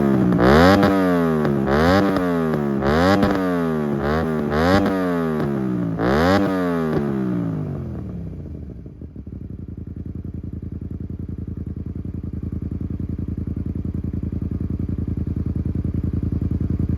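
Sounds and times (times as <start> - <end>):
motorcycle engine revving and idling: 0.0 - 16.9.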